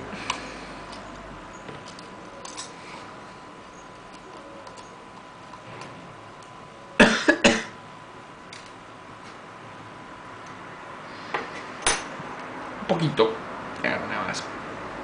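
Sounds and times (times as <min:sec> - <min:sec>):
person coughing: 0:07.0 - 0:07.8.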